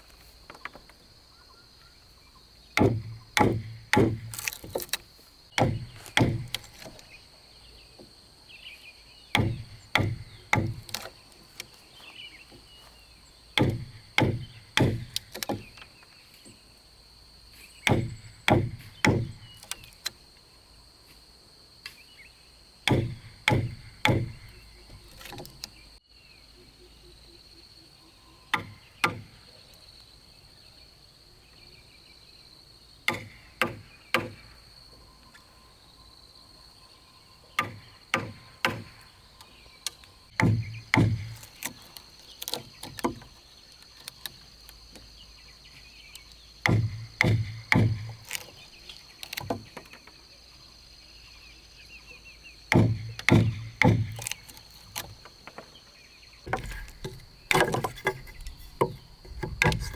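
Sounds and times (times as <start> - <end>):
high insect drone: 0.0 - 59.9
tool knocking on wood: 2.8 - 4.9, 5.6 - 7.0, 9.4 - 11.1, 13.6 - 15.7, 40.4 - 41.7, 46.6 - 48.4, 52.7 - 54.4, 56.5 - 59.9.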